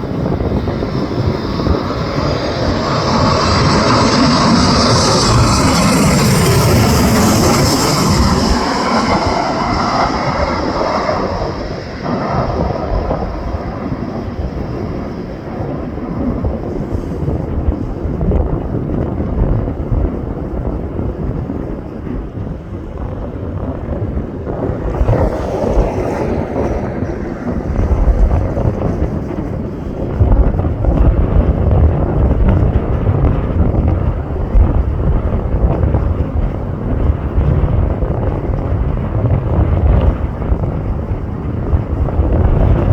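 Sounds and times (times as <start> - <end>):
jet engines passing by: 0.0 - 42.9
wind buffeting microphone: 0.0 - 42.9.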